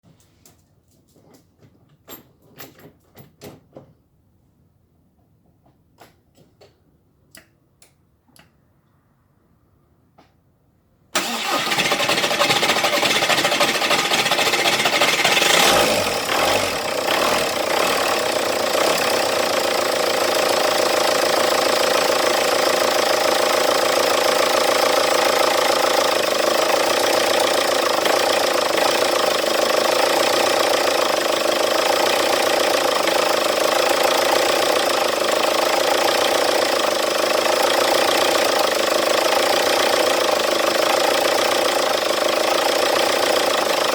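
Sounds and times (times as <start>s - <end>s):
diesel engine starting and running: 11.2s - 43.9s.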